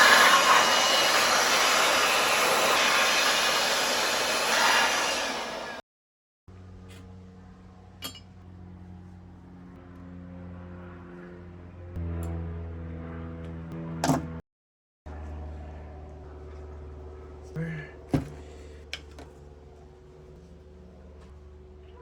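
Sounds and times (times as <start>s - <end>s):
aerosol spray hiss: 0.0s - 5.8s.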